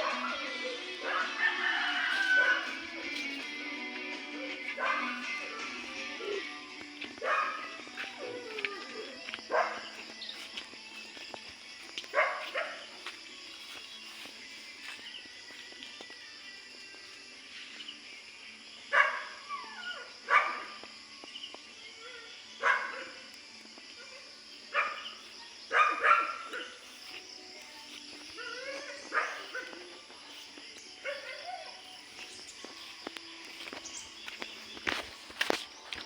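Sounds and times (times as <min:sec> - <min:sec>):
dog barking: 0:00.0 - 0:01.4, 0:04.8 - 0:05.4, 0:07.2 - 0:07.8, 0:09.5 - 0:09.9, 0:12.1 - 0:12.9, 0:18.9 - 0:20.8, 0:22.6 - 0:23.2, 0:24.0 - 0:26.8, 0:28.4 - 0:30.0, 0:31.0 - 0:31.8.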